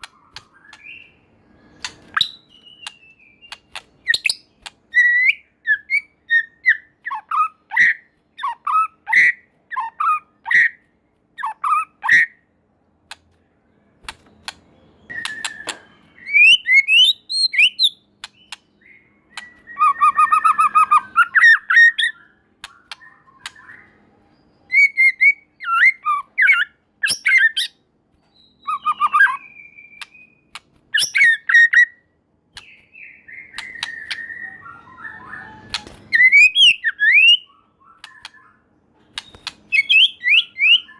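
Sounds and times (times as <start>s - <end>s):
bird singing whistled phrases: 0.2s - 10.8s, 15.0s - 32.0s, 32.6s - 40.9s.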